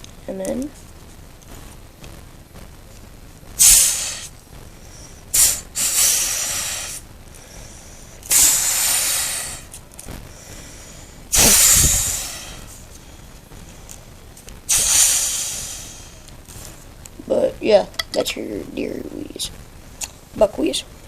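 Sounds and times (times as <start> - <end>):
hissing deer call blasts: 3.6 - 4.3, 5.3 - 7.0, 8.3 - 9.7, 11.3 - 12.7, 14.7 - 16.2.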